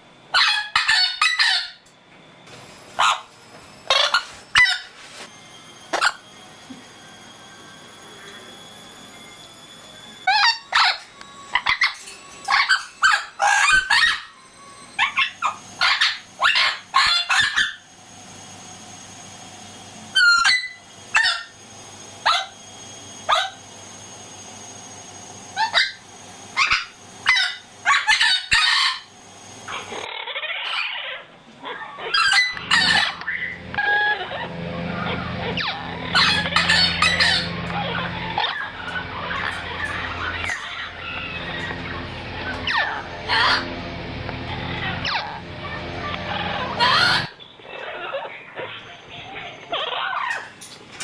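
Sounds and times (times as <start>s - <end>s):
parrot whistles and squawks: 0.3s - 1.9s, 3.0s - 5.0s, 5.9s - 6.2s, 10.2s - 17.9s, 20.1s - 21.6s, 25.5s - 29.1s, 29.7s - 43.7s, 44.5s - 50.6s.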